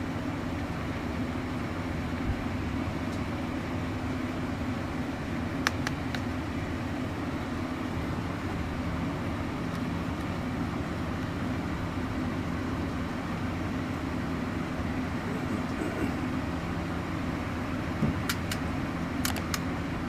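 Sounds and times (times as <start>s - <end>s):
sharp clicks: 5.6s - 6.3s, 18.2s - 19.7s.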